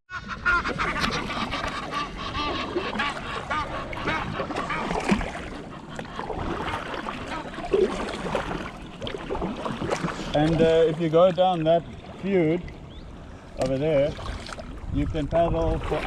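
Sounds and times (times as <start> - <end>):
water splashing: 0.6 - 16.0.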